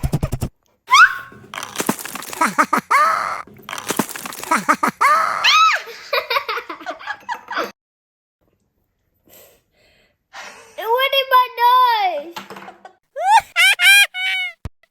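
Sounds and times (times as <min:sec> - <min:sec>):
children giggling and squealing: 0:02.3 - 0:03.4, 0:04.4 - 0:05.9, 0:13.2 - 0:14.6.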